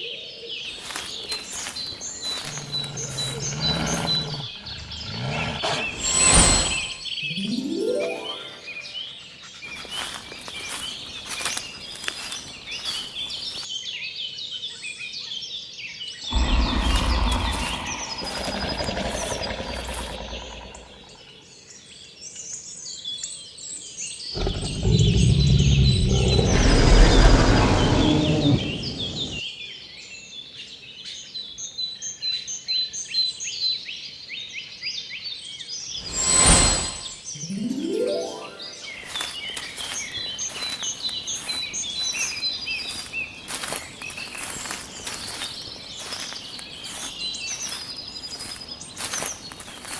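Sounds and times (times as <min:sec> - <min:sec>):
birds chirping in chorus: 0:00.5 - 0:13.7, 0:16.2 - 0:21.4, 0:24.4 - 0:29.4, 0:36.0 - 0:49.9
low rumble: 0:16.3 - 0:20.8.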